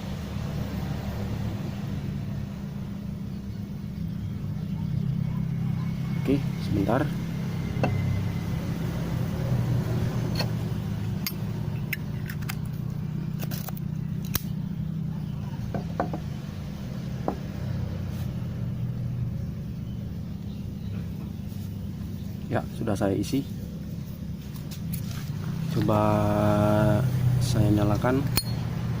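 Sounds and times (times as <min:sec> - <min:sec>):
steady low hum: 0:00.0 - 0:29.0
lighter metallic clicks and clinks: 0:11.2 - 0:14.6, 0:28.2 - 0:28.6.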